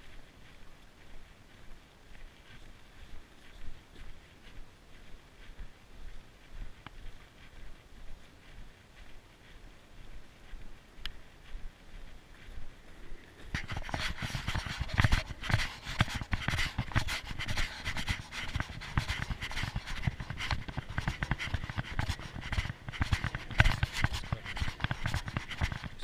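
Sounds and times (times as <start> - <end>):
dog panting: 13.5 - 26.0.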